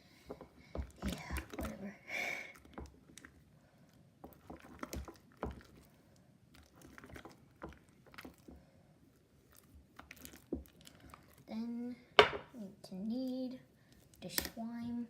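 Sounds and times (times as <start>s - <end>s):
slime squelching: 0.2s - 11.9s.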